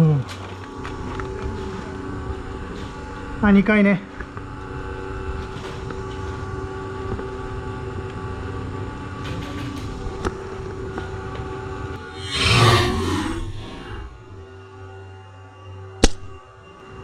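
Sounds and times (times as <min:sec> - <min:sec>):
constant hum: 0:00.0 - 0:14.9
loud rising whoosh: 0:12.2 - 0:14.5
low rumble: 0:12.2 - 0:14.5.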